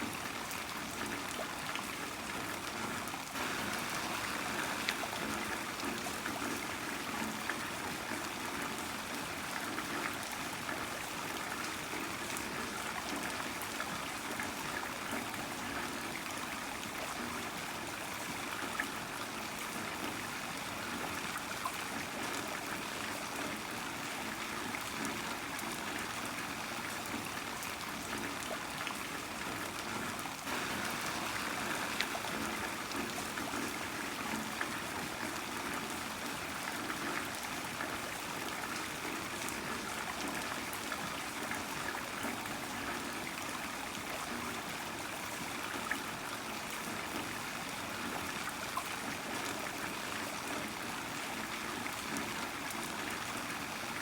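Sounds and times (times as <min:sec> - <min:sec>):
heavy rain falling: 0:03.4 - 0:06.2, 0:30.5 - 0:34.0.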